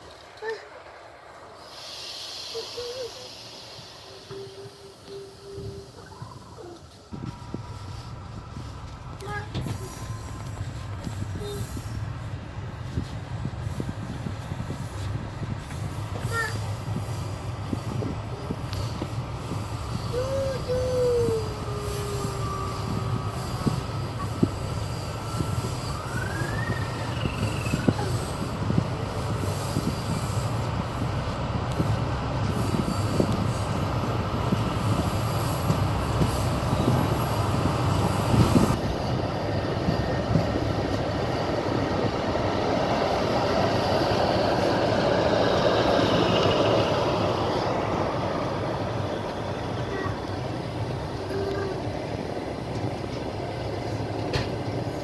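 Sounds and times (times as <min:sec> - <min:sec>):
train wheels rumbling: 0:00.0 - 0:55.0
brief wheel squeals: 0:02.3 - 0:06.7, 0:20.0 - 0:30.5.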